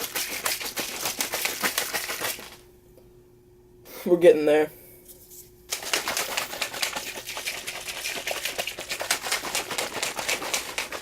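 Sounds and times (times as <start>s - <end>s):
shaker cup rattling: 0.0s - 2.6s, 5.7s - 11.0s.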